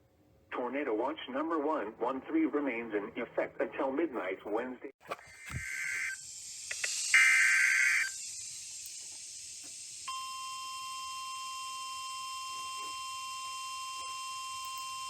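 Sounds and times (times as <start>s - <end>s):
faint radio hiss: 0.5s - 4.9s, 6.0s - 10.1s
digital data burst: 5.6s - 10.2s
warning alarm tone: 7.1s - 8.2s, 10.0s - 15.0s.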